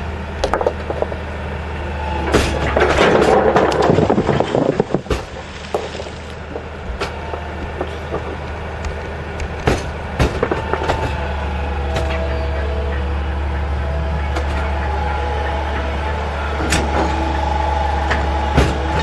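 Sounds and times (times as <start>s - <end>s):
heavy machine engine droning: 0.0s - 19.0s
metallic clanks and knocks: 2.3s - 11.2s.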